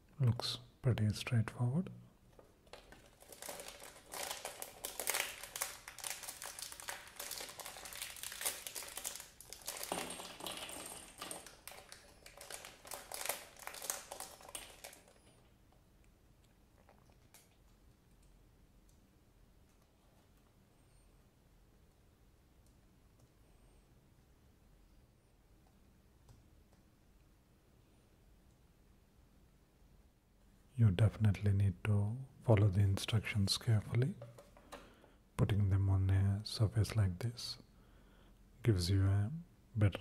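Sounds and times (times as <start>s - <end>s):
packaging crinkling and rustling: 2.3s - 15.5s.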